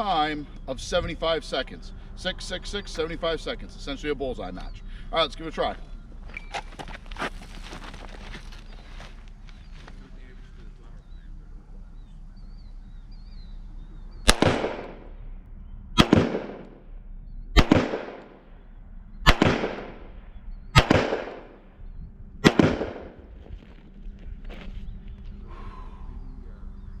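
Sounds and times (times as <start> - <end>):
handgun shots with echo: 14.3 - 15.0, 16.0 - 16.8, 17.6 - 18.3, 19.3 - 20.0, 20.8 - 21.6, 22.4 - 23.2.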